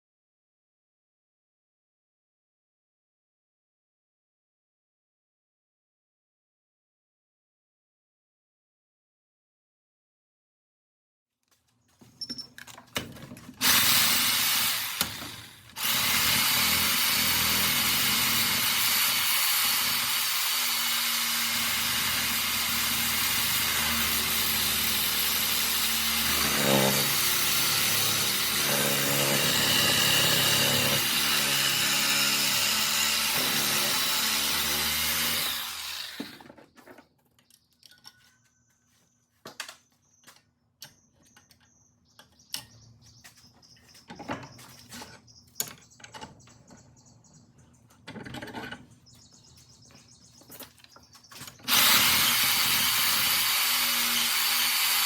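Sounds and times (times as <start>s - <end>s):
power tool cutting metal: 13.6s - 36.5s, 51.6s - 55.0s.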